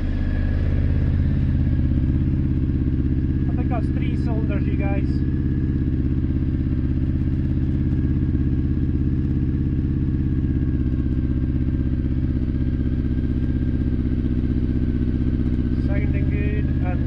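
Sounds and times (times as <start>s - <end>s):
motorcycle engine idling: 0.0s - 17.0s.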